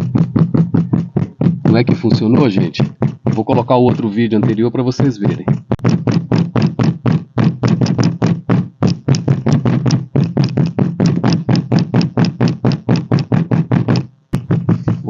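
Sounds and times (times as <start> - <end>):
trim panel rattling: 0.0 - 5.9
rapid knocking on car trunk lid: 0.0 - 15.0.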